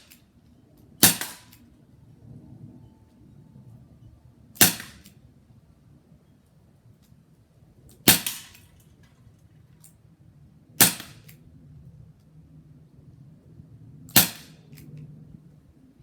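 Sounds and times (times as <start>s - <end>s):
air revolver shots: 1.0s - 1.7s, 4.6s - 5.1s, 8.1s - 8.7s, 10.8s - 11.3s, 14.1s - 14.6s.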